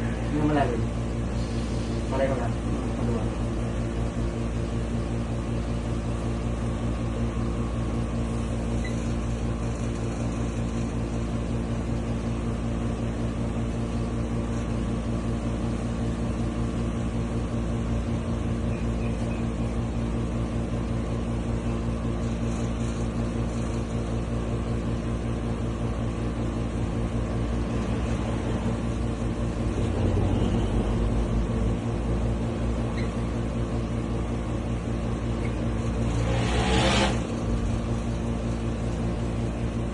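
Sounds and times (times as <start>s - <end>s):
mechanical hum with low drone: 0.0s - 39.9s.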